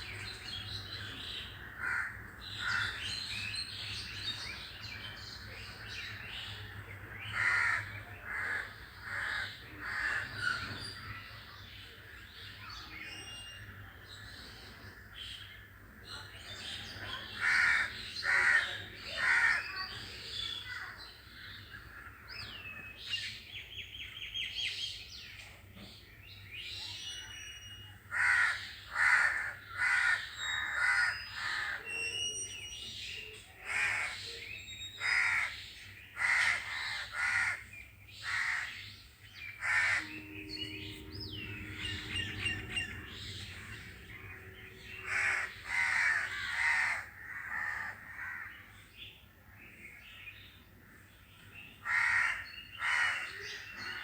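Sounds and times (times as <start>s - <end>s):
crows cawing: 1.7s - 3.0s, 7.4s - 10.4s, 17.4s - 19.7s, 28.1s - 31.7s, 36.2s - 37.6s, 45.0s - 48.6s, 51.8s - 53.3s.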